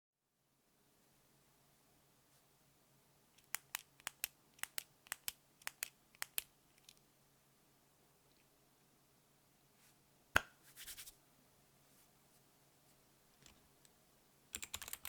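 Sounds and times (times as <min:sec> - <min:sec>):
clicky keyboard keys pressed: 0:03.4 - 0:07.0, 0:14.6 - 0:15.0.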